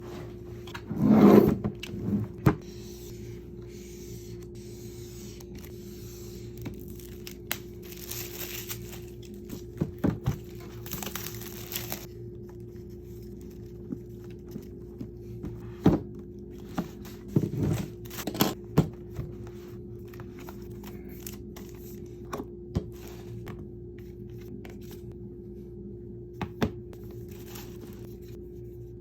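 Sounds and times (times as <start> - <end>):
faint steady hum: 0.0 - 29.0
cardboard and wrapping rustling: 6.4 - 22.0, 27.0 - 28.4.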